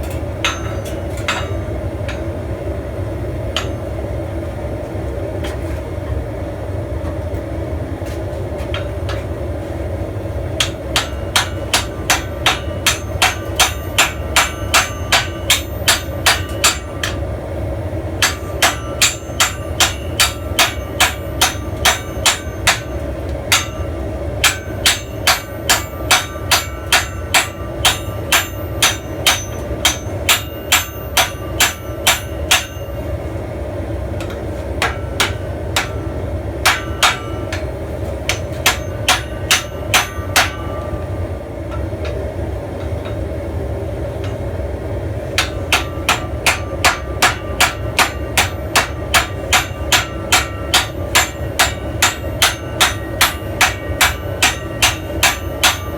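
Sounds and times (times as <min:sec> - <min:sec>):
hammer striking steel on anvil: 0:00.0 - 0:02.4, 0:03.5 - 0:04.1, 0:08.6 - 0:09.3, 0:10.6 - 0:17.4, 0:18.2 - 0:33.3, 0:34.2 - 0:42.2, 0:45.3 - 0:55.9.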